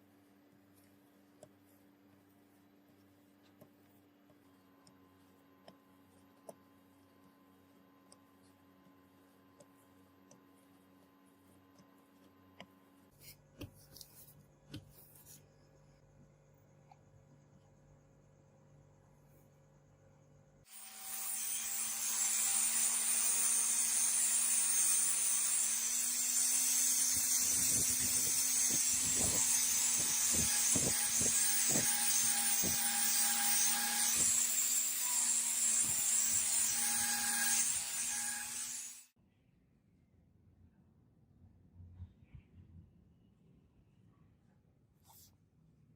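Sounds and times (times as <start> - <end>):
electric power tool running: 20.7 - 39.1.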